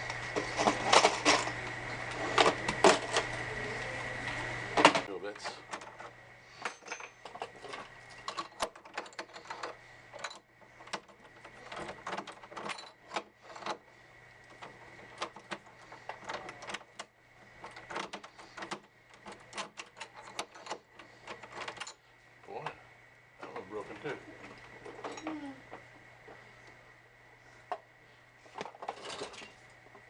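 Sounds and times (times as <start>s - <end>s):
metal lock parts clicking and clinking: 5.7s - 13.8s, 14.6s - 22.0s.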